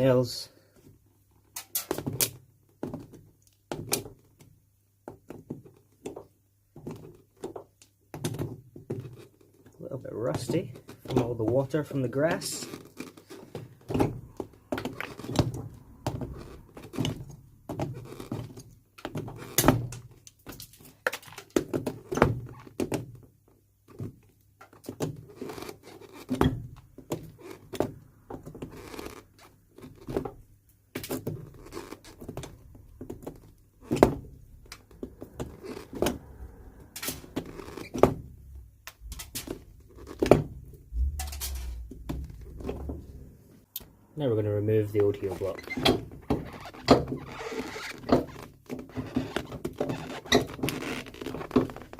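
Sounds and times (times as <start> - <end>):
metal tools clicking and scraping: 41.2 - 41.8.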